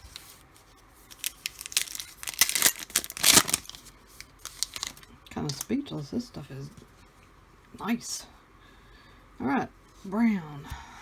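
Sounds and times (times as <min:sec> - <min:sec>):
foil wrapper tearing and crinkling: 0:00.0 - 0:00.3, 0:01.1 - 0:05.7.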